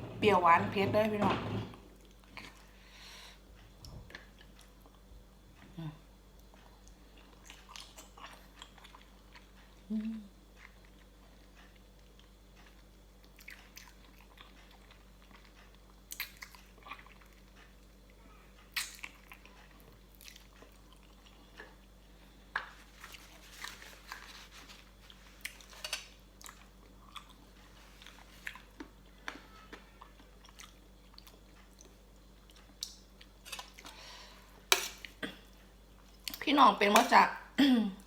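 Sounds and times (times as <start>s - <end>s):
person crunching and chewing food: 6.4s - 36.4s.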